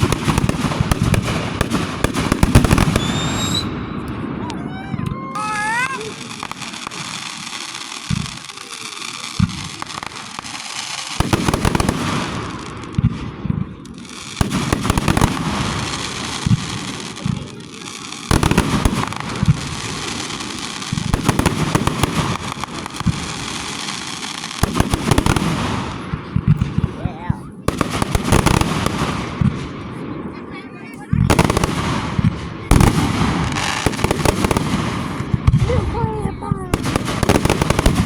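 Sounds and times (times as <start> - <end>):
fireworks thumps: 0.0 - 7.2
fireworks crackling: 0.0 - 38.0
rapid firework bangs: 0.0 - 38.0.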